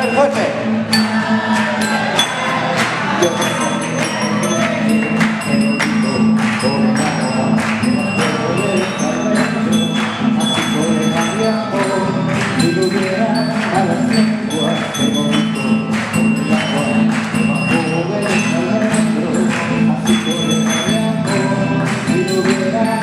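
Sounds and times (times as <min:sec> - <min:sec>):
bell-like high tones: 0:00.0 - 0:23.0.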